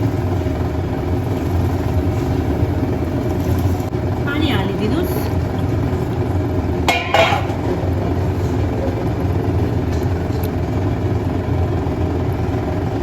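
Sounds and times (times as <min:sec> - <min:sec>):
steady low rumble: 0:00.0 - 0:13.0
utensil clattering against pan: 0:06.9 - 0:08.0.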